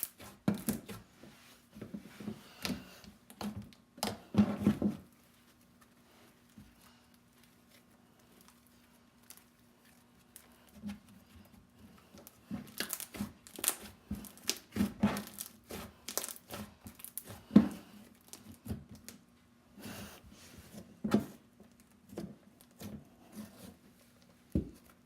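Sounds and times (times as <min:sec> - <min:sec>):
sticky slime clicks and crackles: 0:12.7 - 0:17.4.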